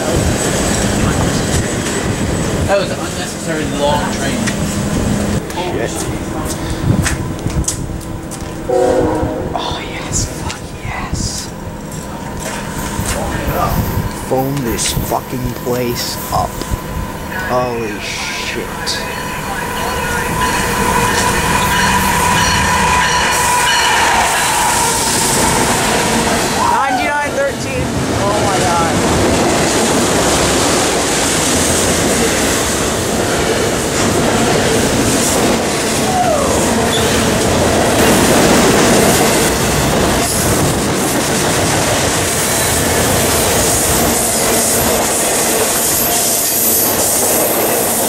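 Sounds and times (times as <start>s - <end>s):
freight train rumbling on rails: 0.0s - 48.0s
high-pitched wheel squeal: 36.1s - 37.2s.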